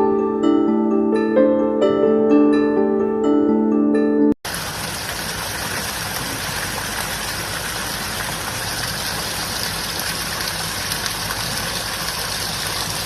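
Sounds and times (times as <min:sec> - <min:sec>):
tap water running: 0:04.5 - 0:13.0.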